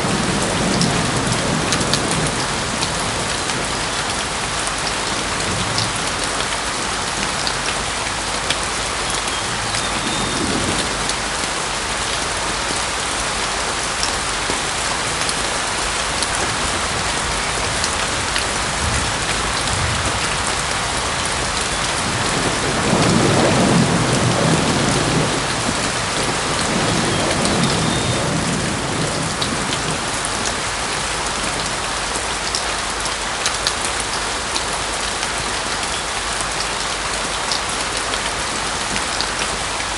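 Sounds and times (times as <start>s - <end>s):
heavy rain pouring: 0.0s - 39.9s
thunder rumbling: 9.5s - 11.3s, 16.2s - 30.7s.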